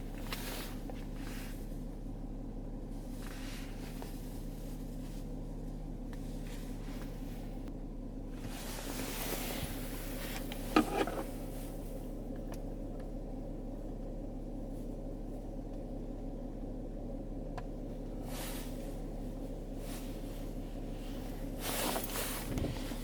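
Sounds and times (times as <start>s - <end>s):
car engine humming: 0.0s - 23.0s.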